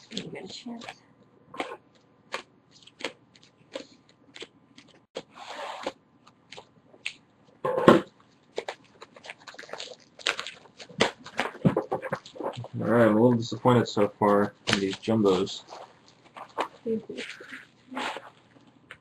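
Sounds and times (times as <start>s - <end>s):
cards crackling and tapping: 1.6s - 7.2s, 8.1s - 12.7s, 14.0s - 17.7s
wrapper crinkling: 8.2s - 12.7s, 14.3s - 18.9s
card pack rustling: 8.4s - 12.7s, 14.2s - 18.8s.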